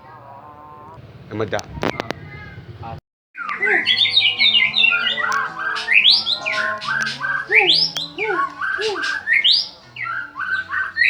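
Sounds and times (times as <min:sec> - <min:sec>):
songbird singing loudly: 0:03.4 - 0:11.0.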